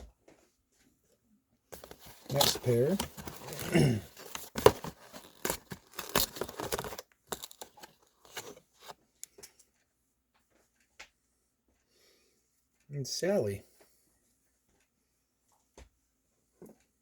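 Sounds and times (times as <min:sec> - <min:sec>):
packaging rustling and crinkling: 0:01.8 - 0:08.9.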